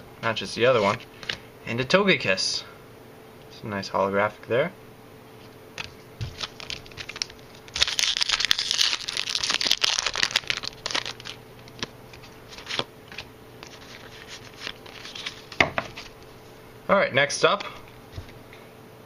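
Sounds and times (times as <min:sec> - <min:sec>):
foil wrapper crumpled and torn: 0:06.4 - 0:12.9, 0:13.6 - 0:15.6.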